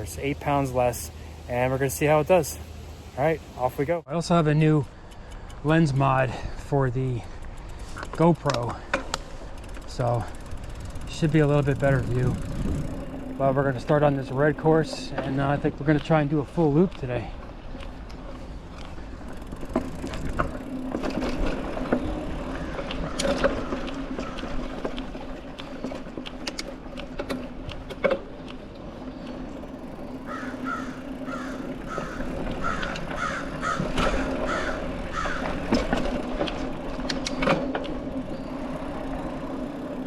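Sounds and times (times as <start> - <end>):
bike tyres on dirt trail: 0.0 - 40.0
bike knocks and rattles: 7.4 - 40.0
bird calling: 21.9 - 26.1, 29.0 - 36.1.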